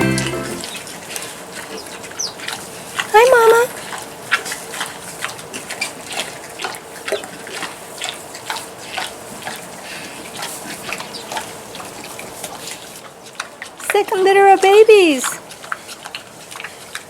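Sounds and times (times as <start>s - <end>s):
pig smacking mouth sounds: 0.2s - 17.0s.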